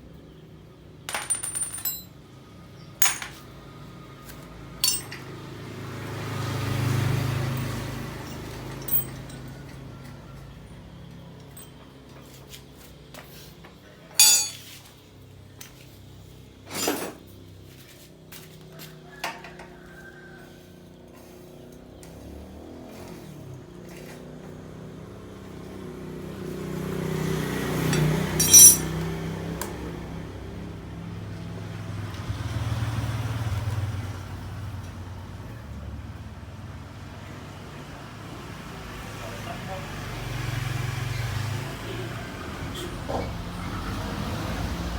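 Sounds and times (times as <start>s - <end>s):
metal parts clinking and clattering: 1.1s - 2.2s, 3.0s - 3.5s, 4.8s - 5.3s, 7.5s - 9.8s, 11.4s - 11.8s, 14.2s - 14.8s, 16.7s - 17.2s, 27.9s - 29.0s.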